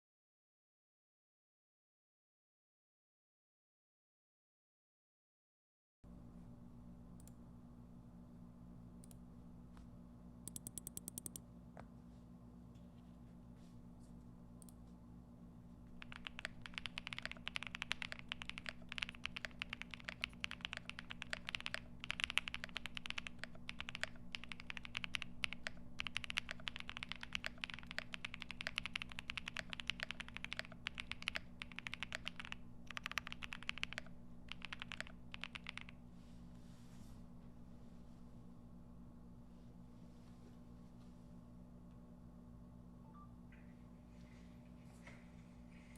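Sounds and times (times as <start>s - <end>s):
mechanical keyboard typing: 10.5s - 11.4s, 16.0s - 36.0s.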